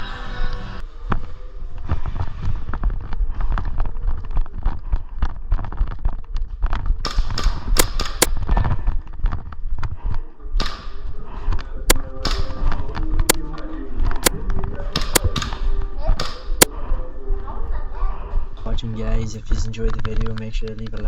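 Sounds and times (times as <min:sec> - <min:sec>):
footsteps: 0:00.8 - 0:21.0
airsoft gun cracks: 0:07.0 - 0:08.4, 0:10.6 - 0:11.1, 0:11.9 - 0:13.4, 0:15.0 - 0:15.6.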